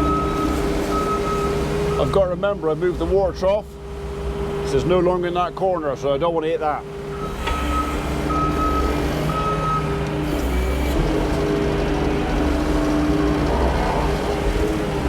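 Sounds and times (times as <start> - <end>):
reversing alarm beeping: 0.0 - 2.3, 7.1 - 10.8
skid steer engine and hydraulics: 0.0 - 15.0.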